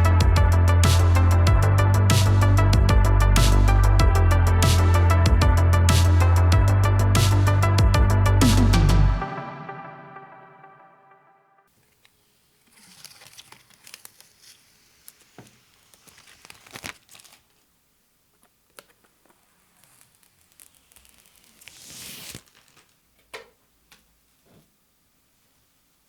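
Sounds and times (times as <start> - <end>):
packaging crinkling and rustling: 12.6 - 17.7, 18.7 - 23.0.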